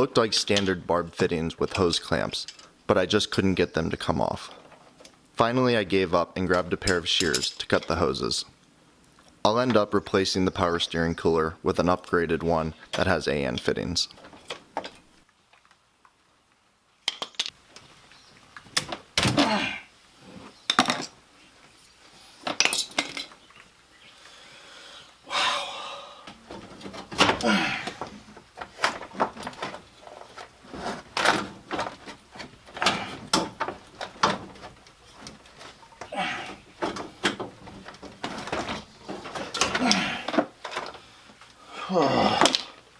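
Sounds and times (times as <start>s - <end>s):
hand tools and metal parts clinking: 1.5s - 2.8s, 6.4s - 8.4s, 17.0s - 17.9s, 20.6s - 21.2s, 22.4s - 23.7s, 26.2s - 41.6s.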